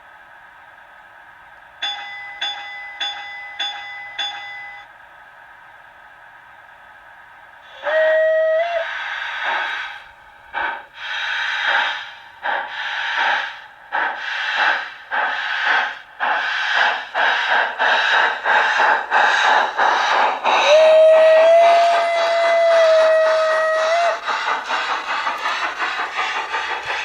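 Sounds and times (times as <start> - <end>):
steam locomotive chuffs: 0.0 - 27.0
model train whistle: 7.7 - 9.1, 20.6 - 24.2.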